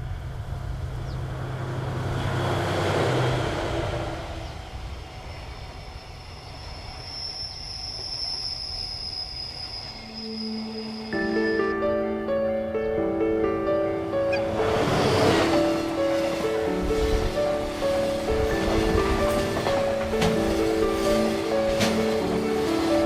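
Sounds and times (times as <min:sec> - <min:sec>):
train passing: 0:00.0 - 0:23.0.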